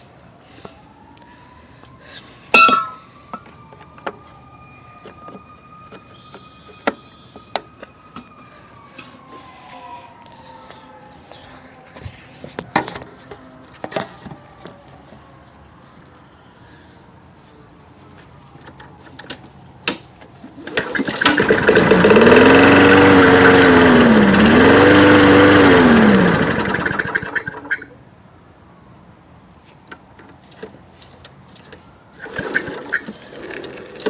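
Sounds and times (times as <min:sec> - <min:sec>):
lawn mower engine running rough: 0:20.6 - 0:27.9, 0:32.2 - 0:34.0.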